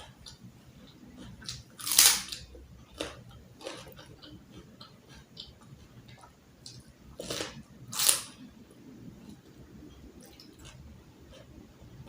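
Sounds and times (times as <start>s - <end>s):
chewing crunchy food: 0.0s - 12.0s.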